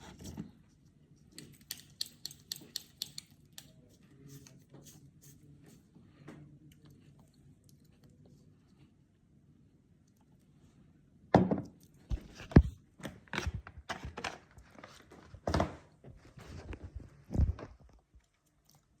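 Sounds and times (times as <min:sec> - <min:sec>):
objects knocking and clunking: 0:11.3 - 0:18.0.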